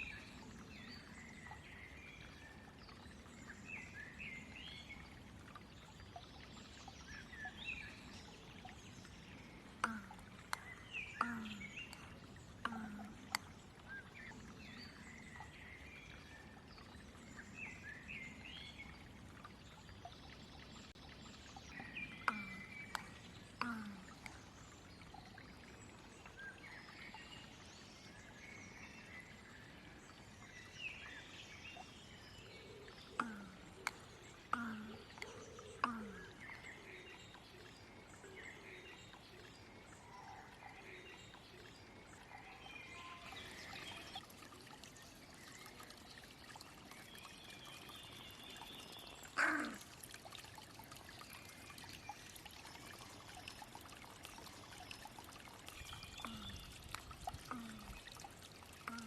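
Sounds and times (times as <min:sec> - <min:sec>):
crow clicking calls: 0:49.4 - 0:49.9.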